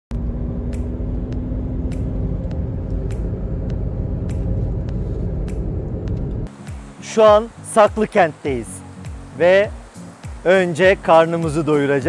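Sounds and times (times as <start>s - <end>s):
motor vehicle rumbling: 0.1s - 6.6s.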